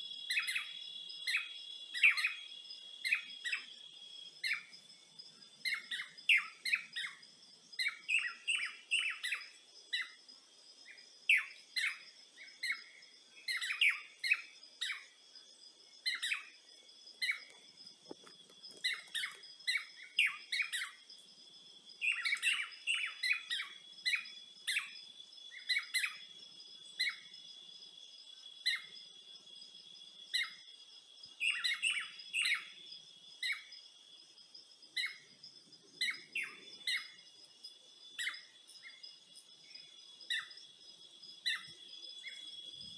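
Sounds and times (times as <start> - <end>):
insect trill: 0.0 - 42.9
birds chirping: 17.2 - 21.0, 22.0 - 24.9, 35.0 - 42.9.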